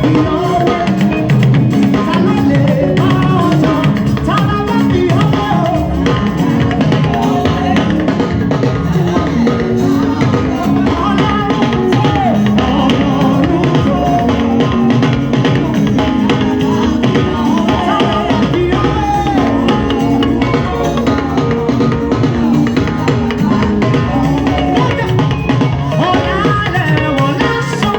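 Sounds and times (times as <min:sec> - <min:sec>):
drum kit beat: 0:00.0 - 0:27.9
person singing: 0:00.0 - 0:27.9
upbeat gospel band music: 0:00.0 - 0:27.9.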